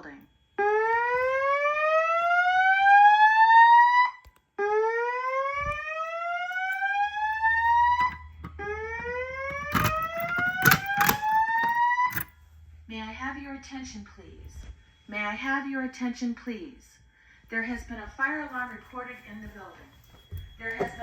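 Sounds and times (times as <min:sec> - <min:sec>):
fire alarm whoop tone: 0:00.6 - 0:12.3.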